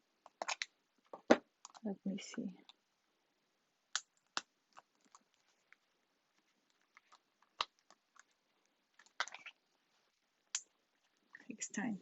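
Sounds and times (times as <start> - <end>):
hands opening cosmetics package: 0.3 - 1.8.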